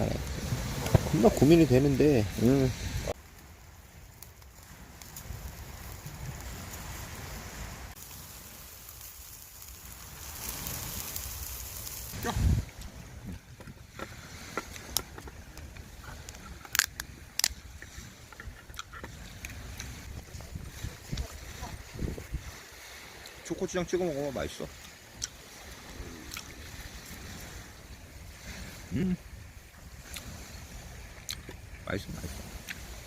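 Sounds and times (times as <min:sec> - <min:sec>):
wind buffeting microphone: 0:10.4 - 0:22.8.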